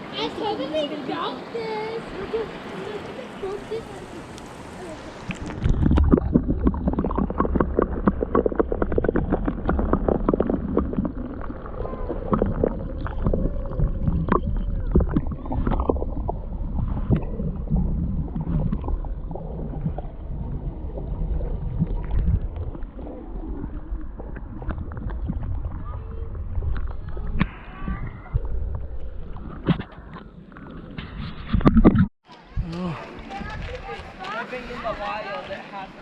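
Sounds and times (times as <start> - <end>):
wind on microphone: 3.5 - 35.0
footsteps on rocky trail: 32.7 - 35.8.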